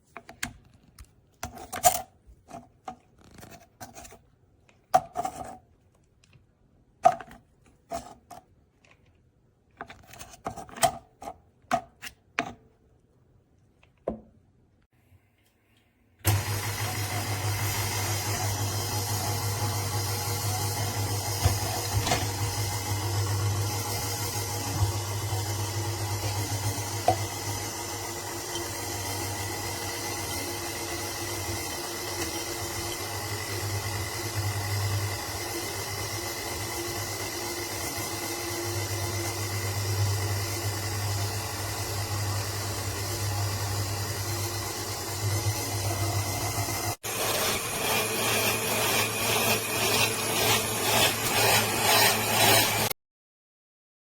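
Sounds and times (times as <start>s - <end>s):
stand mixer motor humming: 16.3s - 52.9s.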